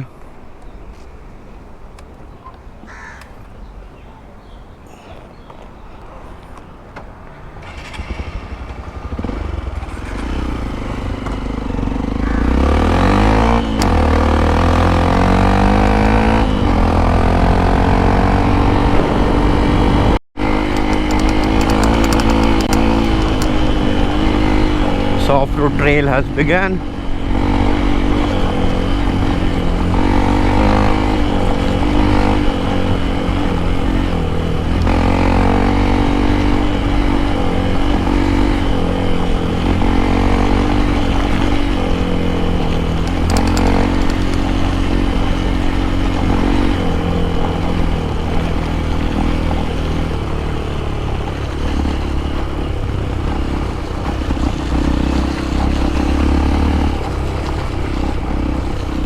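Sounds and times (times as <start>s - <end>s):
motorcycle engine revving: 7.3s - 59.0s
steady low rumble: 7.7s - 12.5s.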